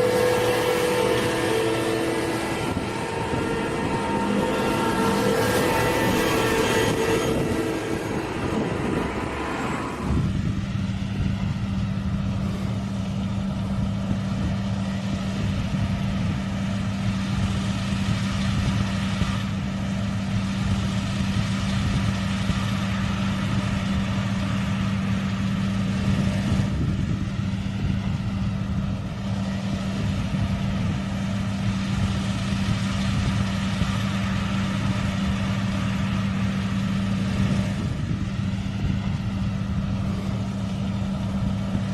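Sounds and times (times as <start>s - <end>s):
horn-like multi-pitched tone: 0.0s - 10.3s
combine harvester engine humming: 0.0s - 41.9s.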